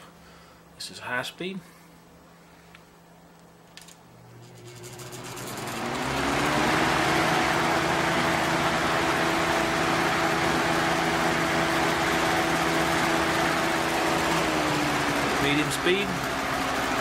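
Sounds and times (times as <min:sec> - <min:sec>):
fan motor hum: 0:00.0 - 0:17.0
box fan air rushing: 0:04.4 - 0:17.0.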